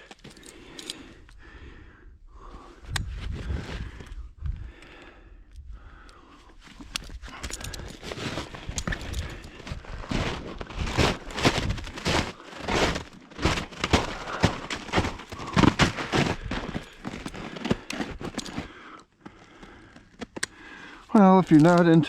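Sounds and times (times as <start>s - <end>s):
footsteps crunching through woods: 8.2s - 18.2s.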